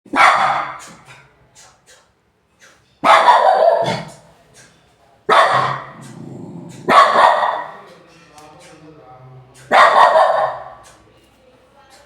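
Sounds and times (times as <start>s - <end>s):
dog barking loudly: 0.1s - 1.1s, 3.0s - 4.2s, 5.3s - 7.8s, 9.7s - 10.8s.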